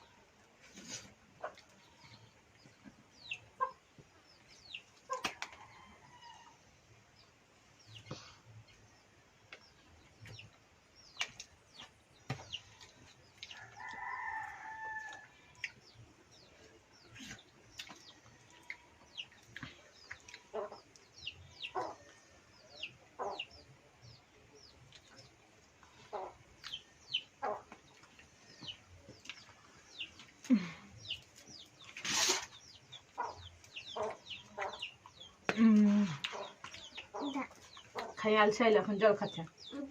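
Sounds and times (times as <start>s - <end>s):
chickens clucking and calling: 0.0s - 38.4s.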